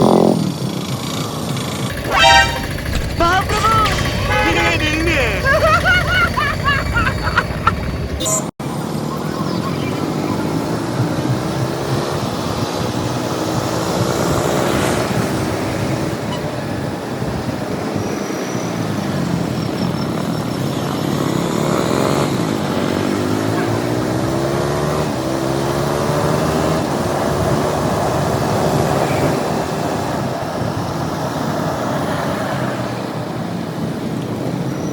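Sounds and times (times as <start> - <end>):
motorcycle engine revving: 0.0 - 8.5, 20.1 - 29.4
wind and road noise: 5.1 - 34.9.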